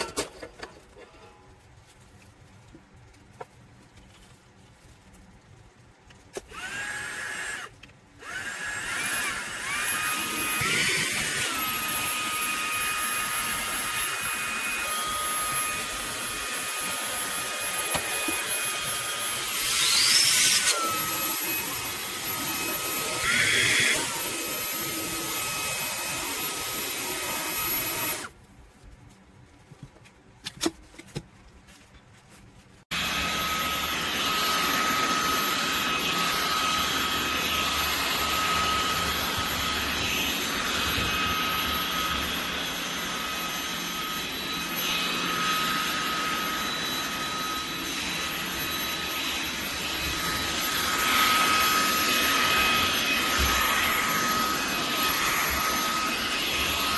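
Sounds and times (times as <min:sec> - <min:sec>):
handheld vacuum motor whine: 0:06.3 - 0:28.4, 0:32.9 - 0:56.9.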